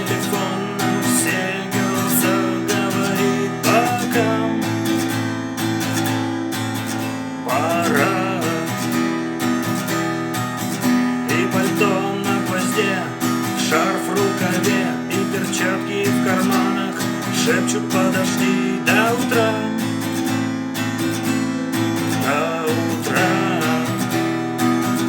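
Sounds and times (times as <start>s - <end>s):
person singing: 0.0s - 5.1s, 7.4s - 9.4s, 11.2s - 20.3s, 22.0s - 24.4s
acoustic guitar strumming: 0.0s - 25.0s.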